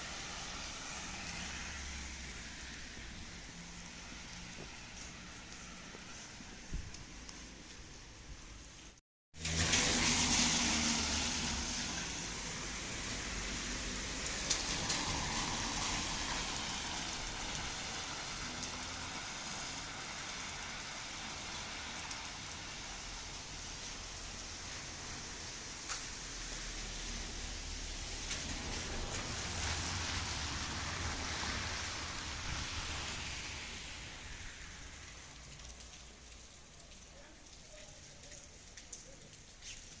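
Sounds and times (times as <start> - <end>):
heavy rain hiss: 9.4 - 37.8.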